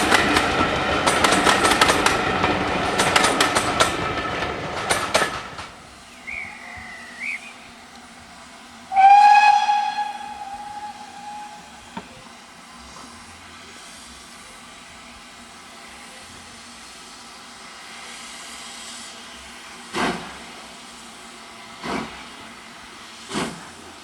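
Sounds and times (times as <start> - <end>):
train wheels clattering over rail joints: 0.0 - 8.0, 19.9 - 20.5, 21.8 - 22.3, 23.2 - 24.0
steam locomotive whistle: 5.9 - 12.4.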